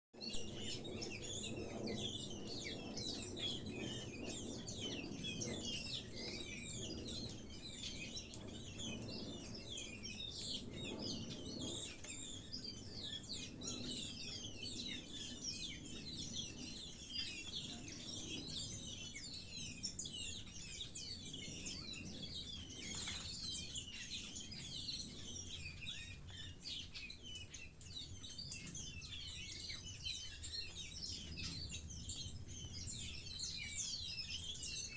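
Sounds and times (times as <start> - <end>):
small birds chirping: 0.2 - 34.9.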